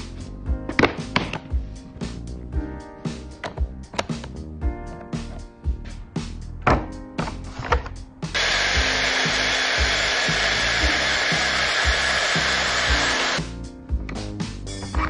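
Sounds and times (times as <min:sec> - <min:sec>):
background music with beat: 0:00.0 - 0:15.0
power tool running: 0:08.4 - 0:13.4.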